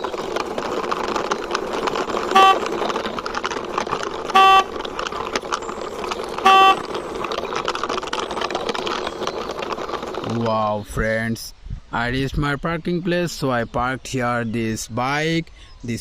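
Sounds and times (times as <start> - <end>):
plastic toy wheels rattling: 0.0 - 10.9
horn beeping: 2.2 - 3.0, 4.2 - 5.0, 6.3 - 7.0.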